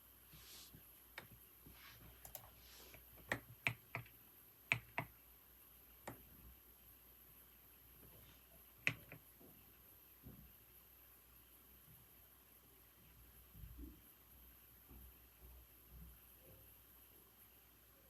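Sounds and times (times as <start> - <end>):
keyboard keys clicking: 2.2 - 2.5, 3.2 - 5.1.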